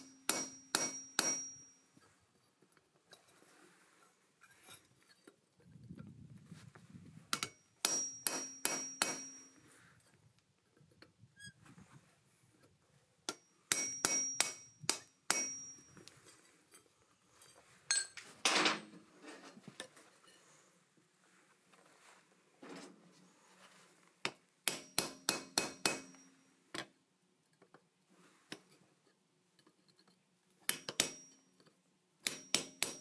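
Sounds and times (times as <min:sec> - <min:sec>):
hammer striking steel punch: 0:00.0 - 0:01.7, 0:07.4 - 0:09.6, 0:13.3 - 0:15.8, 0:24.7 - 0:26.3, 0:30.7 - 0:31.4, 0:32.2 - 0:33.0.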